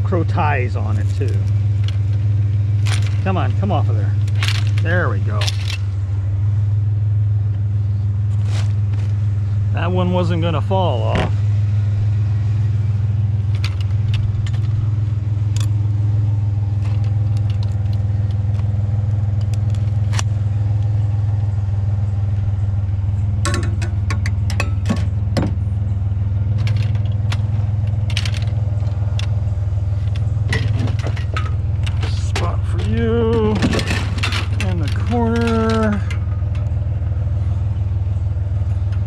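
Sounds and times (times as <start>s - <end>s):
vehicle engine humming: 0.0s - 39.0s
loose metal clicks and rattles: 0.5s - 6.0s, 13.4s - 16.0s, 16.6s - 21.0s, 23.4s - 39.0s.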